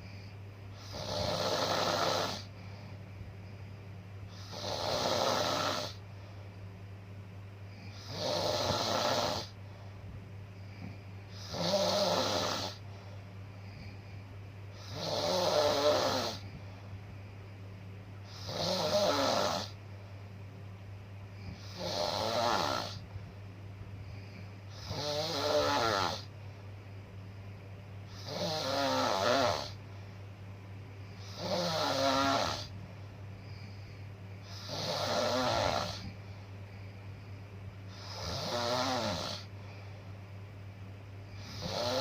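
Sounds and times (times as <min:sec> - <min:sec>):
rasping snores: 0:00.8 - 0:02.5, 0:04.3 - 0:06.0, 0:07.8 - 0:09.6, 0:10.8 - 0:12.8, 0:14.8 - 0:16.4, 0:18.3 - 0:19.8, 0:21.6 - 0:23.0, 0:24.7 - 0:26.3, 0:28.1 - 0:29.8, 0:31.2 - 0:32.7, 0:34.4 - 0:36.2, 0:37.9 - 0:39.5, 0:41.4 - 0:42.0.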